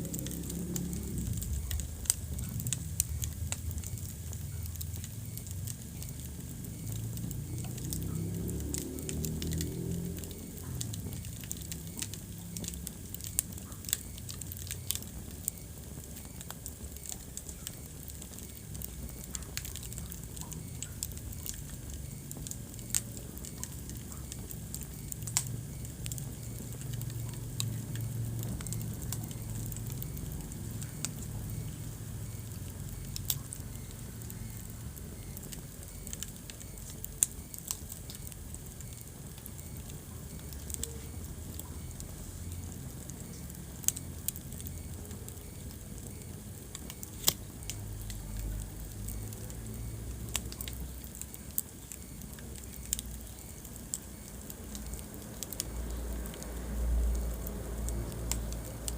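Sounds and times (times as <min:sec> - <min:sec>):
fire crackling and popping: 0:00.0 - 0:58.9
low rumble of flames: 0:00.0 - 0:58.9
wood fire snapping: 0:00.0 - 0:58.9.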